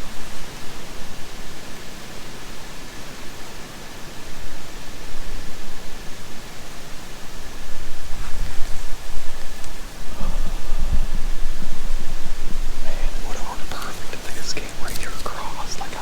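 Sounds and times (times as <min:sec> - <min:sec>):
rain falling: 0:08.6 - 0:16.0.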